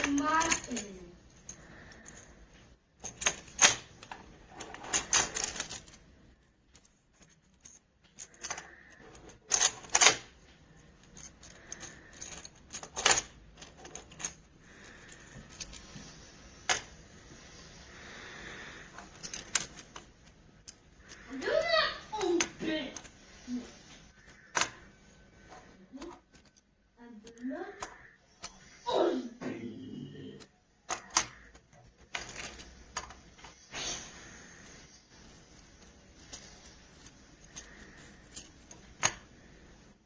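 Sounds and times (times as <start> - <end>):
plastic blocks clicking together: 0.0 - 2.2, 3.0 - 6.0, 6.7 - 16.0, 18.9 - 23.3, 24.1 - 24.9, 25.9 - 28.6, 30.8 - 33.6, 35.2 - 39.6.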